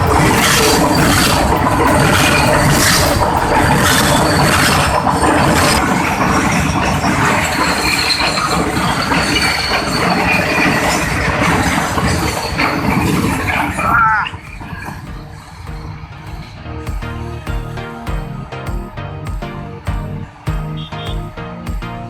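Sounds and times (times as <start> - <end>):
steel wheels squealing on rail: 0.0 - 15.6.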